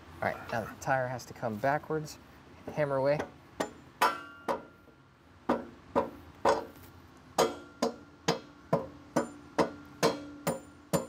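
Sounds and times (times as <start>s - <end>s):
hammer striking metal axle: 3.2s - 4.8s, 5.5s - 6.8s, 7.4s - 11.0s.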